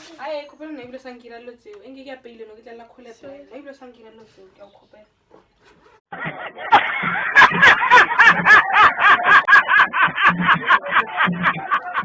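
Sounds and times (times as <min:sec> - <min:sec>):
person laughing loudly: 0:06.2 - 0:12.0.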